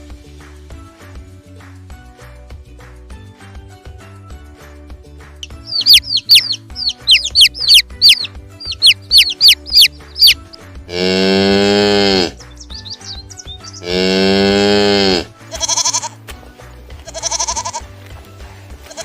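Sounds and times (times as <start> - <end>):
chicks peeping: 5.4 - 10.6, 12.2 - 14.0
cow mooing: 10.9 - 12.4, 13.8 - 15.3.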